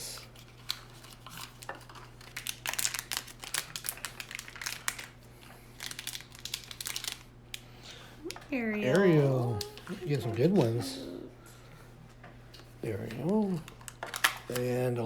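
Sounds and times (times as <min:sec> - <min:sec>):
packaging crinkling and rustling: 0:00.1 - 0:07.6, 0:12.5 - 0:15.0.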